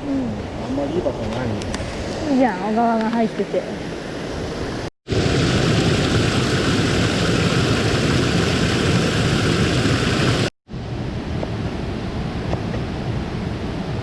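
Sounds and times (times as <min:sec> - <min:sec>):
stream rushing over rocks: 0:03.8 - 0:10.5.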